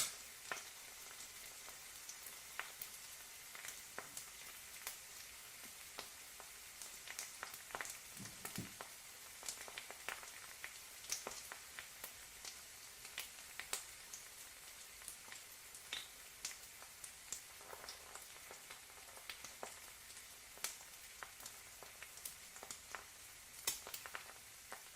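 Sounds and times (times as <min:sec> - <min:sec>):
crackling pops: 0:00.0 - 0:00.7, 0:22.6 - 0:24.9
egg sizzling in a pan: 0:00.0 - 0:24.9.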